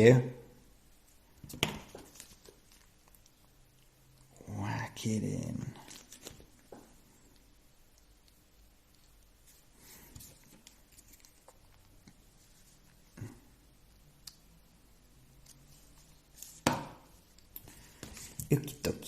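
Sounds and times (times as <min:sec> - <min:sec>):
faint plastic parts rustling: 0:05.5 - 0:07.4, 0:08.9 - 0:13.4.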